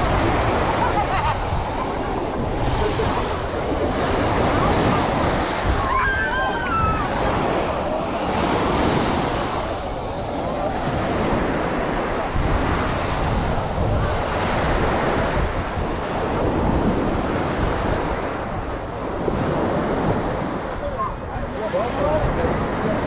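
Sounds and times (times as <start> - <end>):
sea waves breaking on shore: 0.0 - 23.0
wind rumbling on microphone: 0.0 - 23.0.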